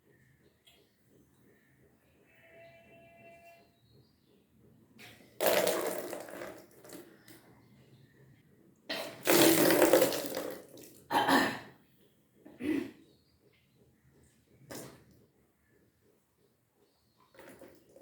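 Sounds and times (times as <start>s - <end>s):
person retching water: 5.0s - 7.0s, 8.9s - 11.3s.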